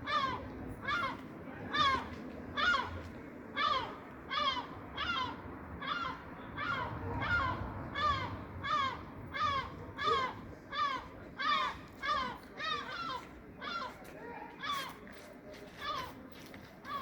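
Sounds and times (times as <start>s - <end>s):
gull calling: 3.6s - 13.9s.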